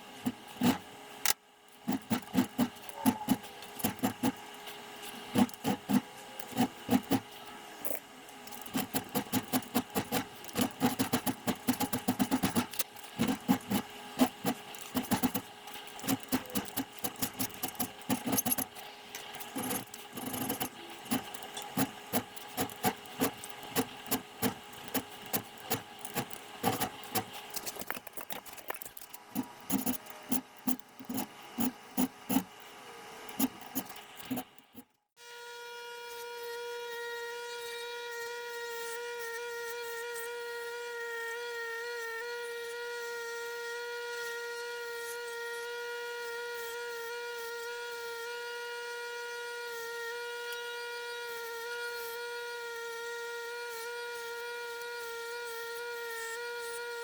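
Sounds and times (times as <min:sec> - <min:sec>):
steady hum: 0:00.0 - 0:34.9.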